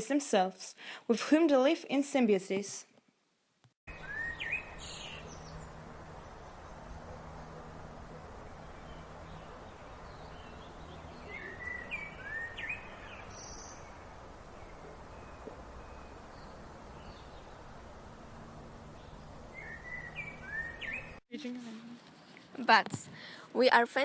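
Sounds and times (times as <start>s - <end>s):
songbird chirping: 3.9s - 21.8s
woodland background noise: 3.9s - 24.0s.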